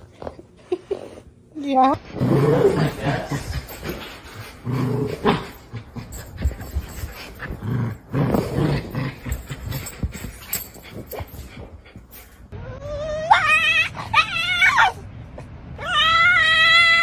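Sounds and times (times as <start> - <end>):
dog grumbling growls: 2.1 - 6.4, 7.4 - 10.0.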